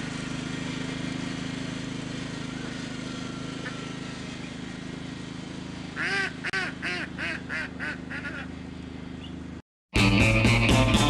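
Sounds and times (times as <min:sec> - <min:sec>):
bird calling: 0:06.0 - 0:08.6, 0:09.2 - 0:09.4.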